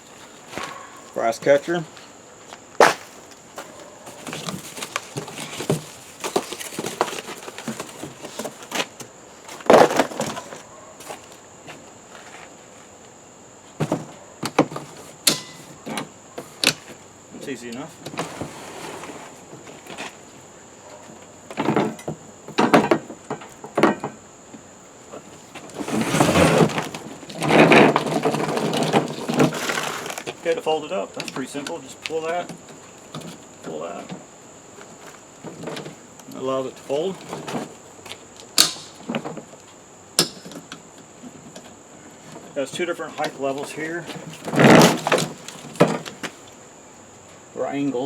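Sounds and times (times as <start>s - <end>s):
mower parts being handled: 2.8s - 11.4s, 13.8s - 17.0s, 18.0s - 20.4s, 25.2s - 46.5s
scraping and rustling: 2.8s - 12.9s, 18.1s - 22.0s, 25.2s - 30.6s, 36.8s - 38.2s, 41.2s - 46.5s.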